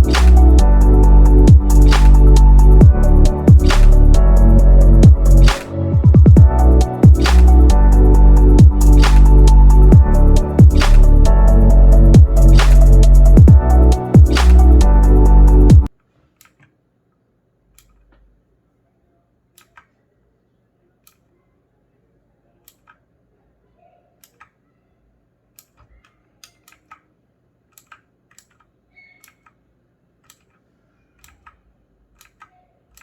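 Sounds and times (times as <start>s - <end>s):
electronic music with heavy bass: 0.0s - 15.9s.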